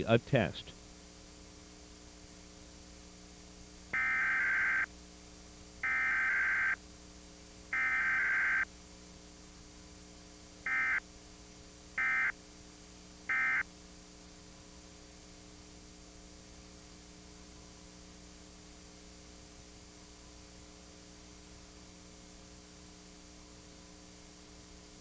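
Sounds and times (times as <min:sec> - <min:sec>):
steady low hum: 0:00.0 - 0:03.9.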